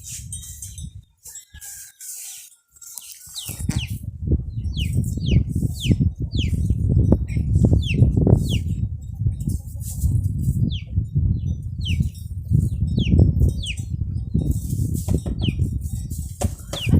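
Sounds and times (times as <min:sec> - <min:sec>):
bird chirping: 0:02.2 - 0:08.8, 0:10.6 - 0:14.0.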